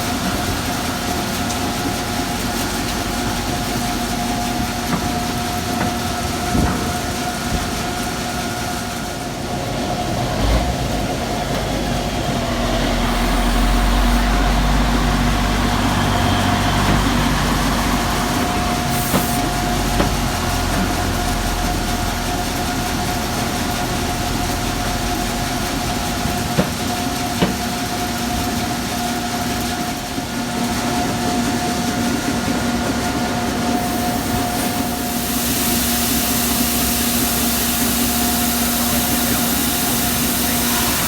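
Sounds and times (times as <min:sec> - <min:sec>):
heavy engine idling: 0:00.0 - 0:41.0
loud hiss: 0:11.8 - 0:20.0, 0:33.8 - 0:41.0.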